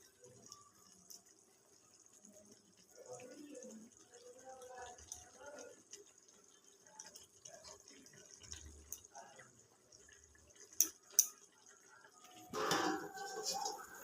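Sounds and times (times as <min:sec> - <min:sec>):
small kitchen clinks: 0:12.4 - 0:14.0.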